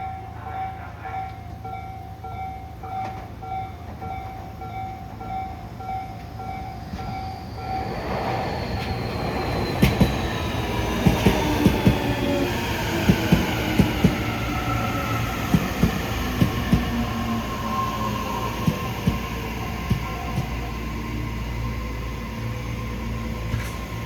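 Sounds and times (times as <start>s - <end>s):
electric train running: 6.9s - 24.0s.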